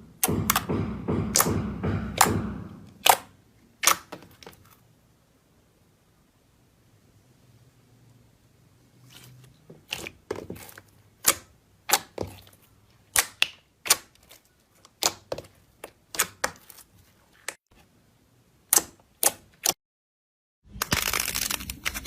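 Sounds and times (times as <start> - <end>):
slime being pressed: 3.0 - 4.5, 9.8 - 16.8.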